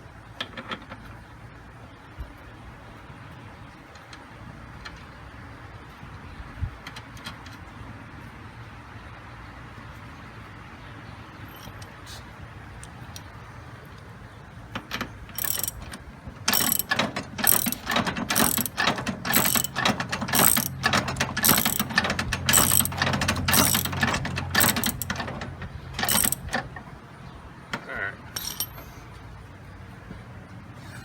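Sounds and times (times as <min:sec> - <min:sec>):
socket ratchet clicking: 0:14.8 - 0:26.8.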